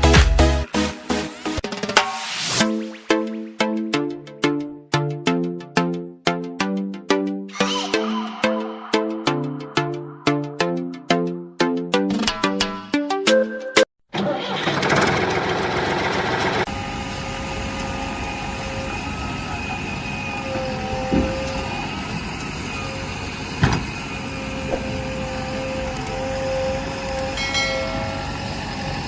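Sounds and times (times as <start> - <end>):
vehicle engine running: 14.6 - 20.3.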